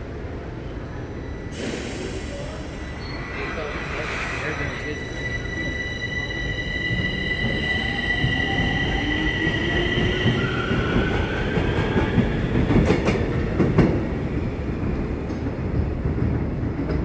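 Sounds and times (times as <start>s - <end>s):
train wheels rumbling on rail: 0.2s - 17.0s.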